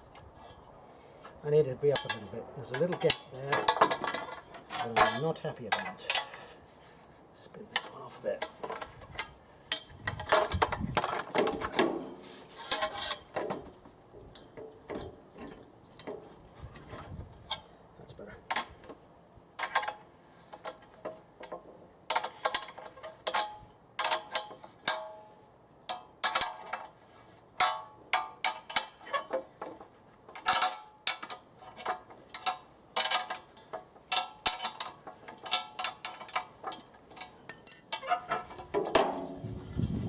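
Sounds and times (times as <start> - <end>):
spanner clicking on metal nuts: 37.5 - 38.4.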